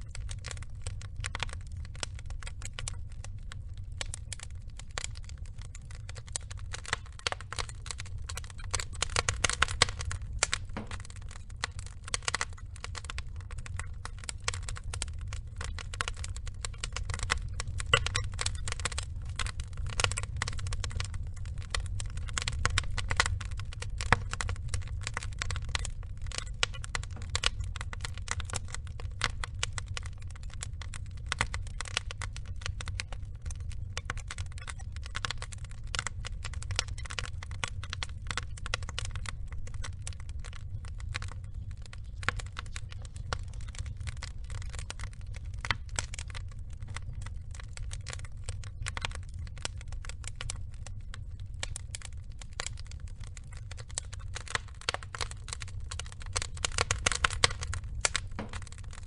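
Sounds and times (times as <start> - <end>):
low rumble: 0.0 - 36.7
wood fire crackling: 0.0 - 59.0.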